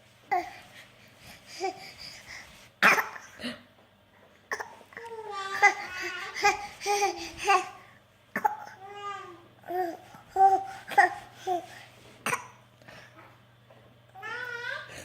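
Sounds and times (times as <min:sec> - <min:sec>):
child fake coughing: 0:02.8 - 0:03.6, 0:08.4 - 0:08.8, 0:12.2 - 0:12.6
child babbling and cooing: 0:04.5 - 0:07.8, 0:08.4 - 0:11.7, 0:14.2 - 0:15.0.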